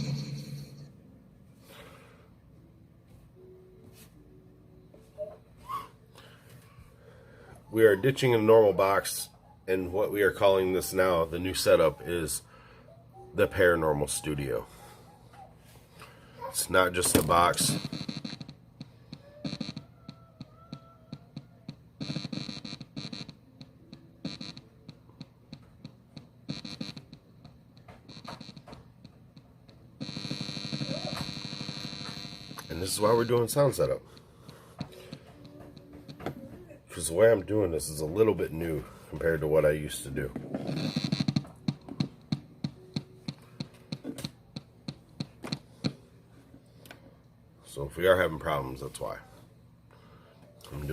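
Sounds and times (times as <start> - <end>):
steady hum: 0.0 - 5.1, 15.8 - 20.6, 21.2 - 50.9.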